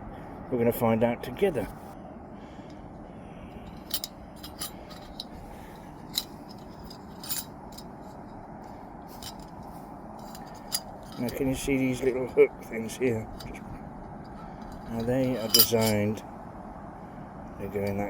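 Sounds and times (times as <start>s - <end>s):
metallic clinks: 3.6s - 8.2s, 9.1s - 11.5s, 13.2s - 16.2s.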